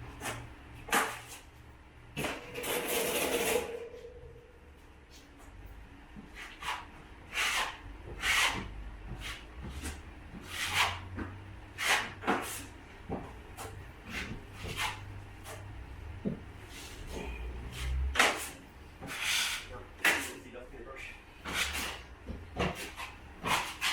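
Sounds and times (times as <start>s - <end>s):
taping knife scraping compound: 6.3s - 12.7s, 13.6s - 15.7s, 17.8s - 20.4s, 21.4s - 22.0s, 22.6s - 23.9s.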